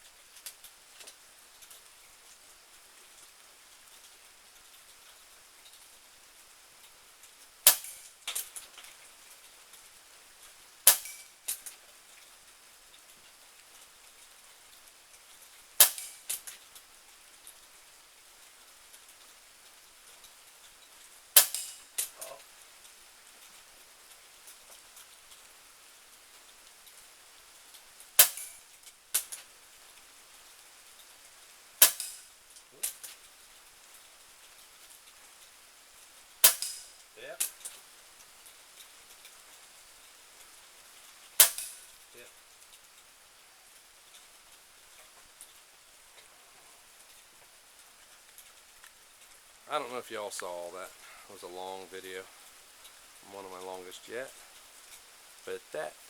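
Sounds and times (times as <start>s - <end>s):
light rain hissing: 0.0s - 56.0s
air pistol shots: 7.7s - 8.1s, 10.9s - 11.3s, 15.8s - 16.2s, 21.4s - 21.8s, 28.2s - 28.6s, 31.8s - 32.2s, 36.4s - 36.8s, 41.4s - 41.8s
faint clicks: 43.7s - 51.3s.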